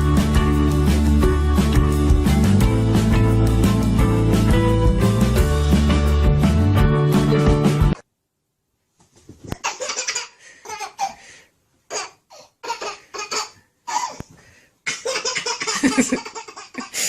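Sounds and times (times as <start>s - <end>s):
rock music with guitar: 0.0s - 8.0s.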